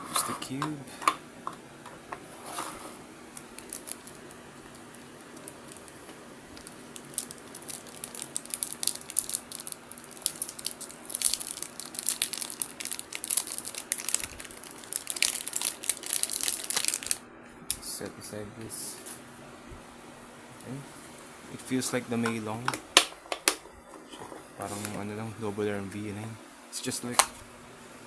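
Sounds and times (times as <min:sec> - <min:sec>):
plastic wrapping crinkling: 0:02.3 - 0:17.2.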